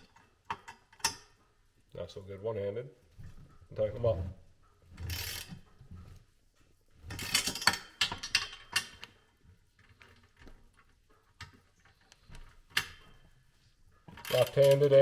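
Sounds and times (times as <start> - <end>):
metal bolts clinking and clicking: 0.0 - 1.4, 7.1 - 13.4, 14.1 - 15.0.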